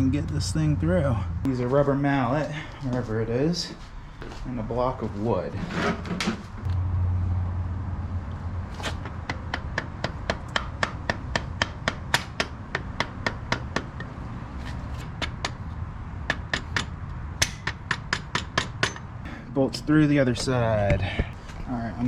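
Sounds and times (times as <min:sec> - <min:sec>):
low hum: 0:00.0 - 0:01.8, 0:06.4 - 0:11.1.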